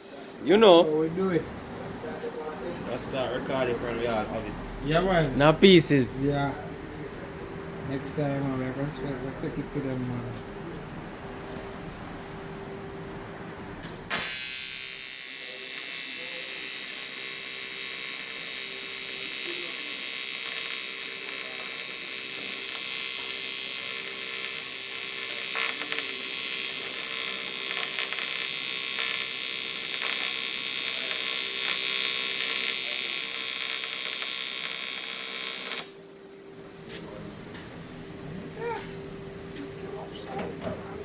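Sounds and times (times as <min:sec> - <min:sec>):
welding arc buzzing hiss: 0:00.0 - 0:00.4, 0:13.8 - 0:40.2.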